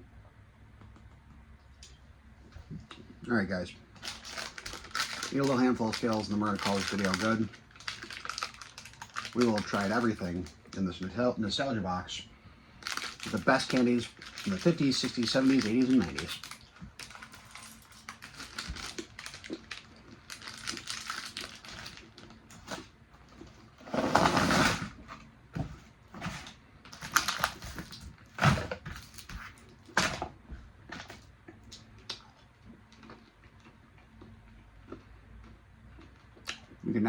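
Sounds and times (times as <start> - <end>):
close chewing of candy: 3.9 - 10.8, 12.8 - 23.8, 26.2 - 30.2, 30.8 - 36.9.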